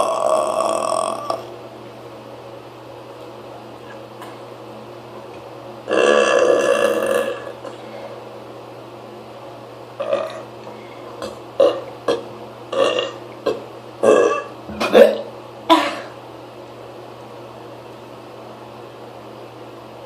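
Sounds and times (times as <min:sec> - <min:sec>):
person burping loudly: 0:00.0 - 0:01.5, 0:05.9 - 0:07.8, 0:10.0 - 0:10.5, 0:11.2 - 0:16.1.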